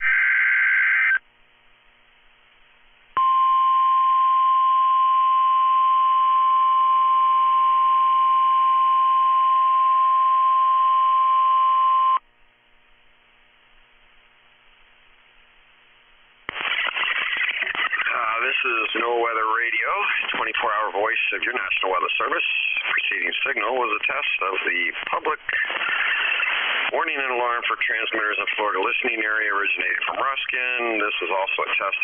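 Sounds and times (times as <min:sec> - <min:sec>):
faint radio hiss: 0:12.2 - 0:32.0
digital data burst: 0:16.5 - 0:18.7, 0:25.6 - 0:26.8.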